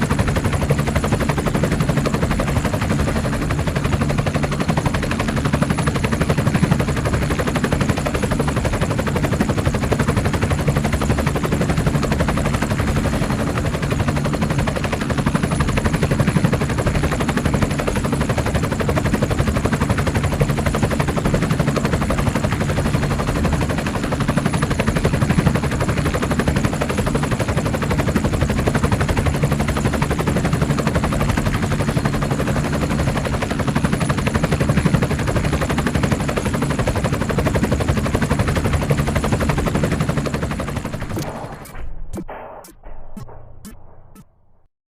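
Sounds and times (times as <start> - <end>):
helicopter engines droning: 0.0 - 41.8
helicopter rotor chopping: 0.0 - 44.6.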